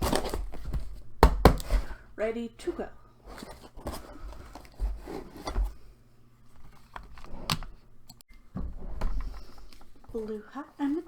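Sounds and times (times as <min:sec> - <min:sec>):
small items handled: 0:02.6 - 0:08.2.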